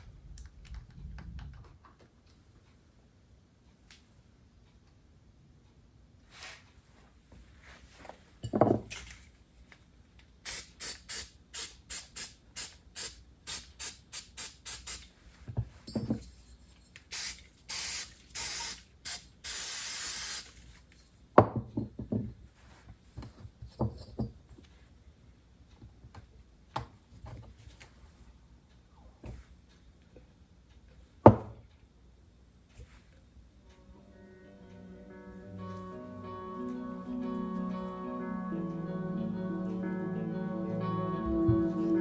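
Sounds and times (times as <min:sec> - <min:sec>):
parts being handled knocks: 0:08.4 - 0:09.1, 0:15.5 - 0:16.4, 0:23.2 - 0:24.4
short hissing sprays: 0:10.4 - 0:15.2, 0:17.1 - 0:20.6.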